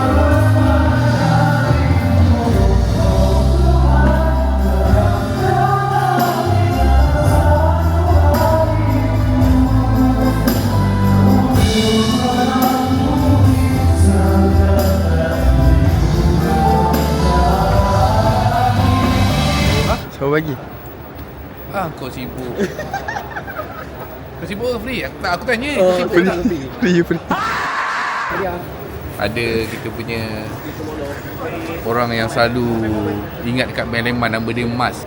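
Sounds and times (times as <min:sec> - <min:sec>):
band playing a song: 0:00.0 - 0:20.0
voices singing together: 0:00.0 - 0:20.0.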